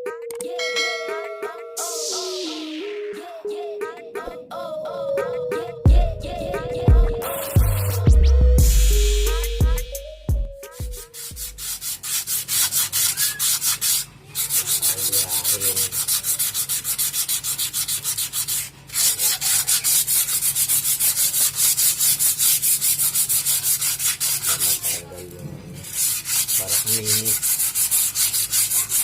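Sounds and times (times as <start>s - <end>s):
sandpaper sanding brake lining: 11.0s - 29.0s.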